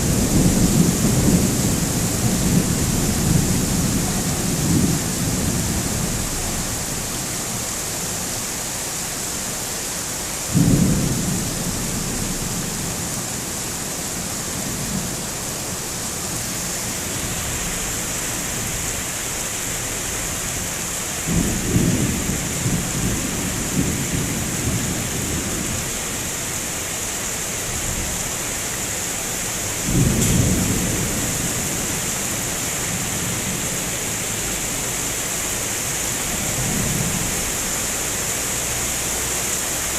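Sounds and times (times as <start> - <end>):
thunder rumbling: 0.0 - 7.1, 10.5 - 13.5, 16.6 - 26.2, 29.8 - 34.8
rain hissing: 0.0 - 39.9.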